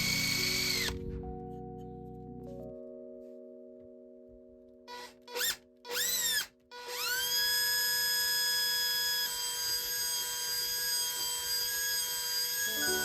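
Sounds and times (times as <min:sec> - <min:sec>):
electric drill motor whine: 0:00.0 - 0:01.0, 0:04.9 - 0:13.0.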